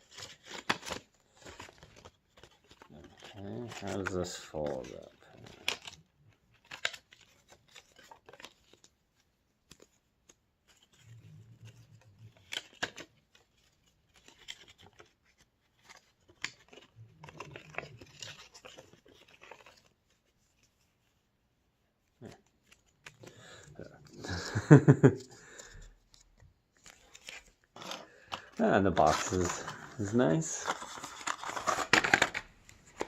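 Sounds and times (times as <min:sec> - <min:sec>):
cardboard box being folded: 0:25.2 - 0:33.0.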